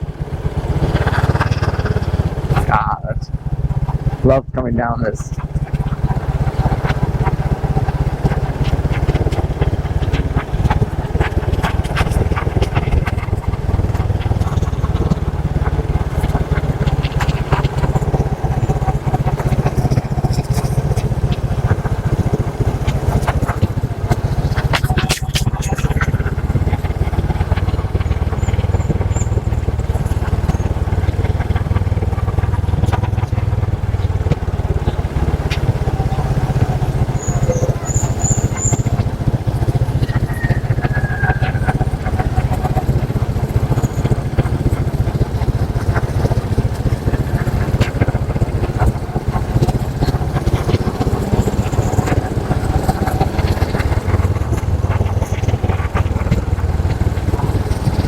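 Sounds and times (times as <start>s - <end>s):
motorcycle engine rumbling: 0.0s - 58.0s.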